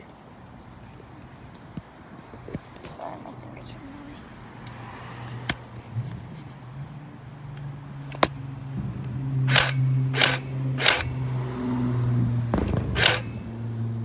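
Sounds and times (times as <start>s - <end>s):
airsoft gun click: 9.5s - 11.1s, 13.0s - 13.3s
airsoft gun shots: 9.5s - 11.2s, 12.5s - 13.5s.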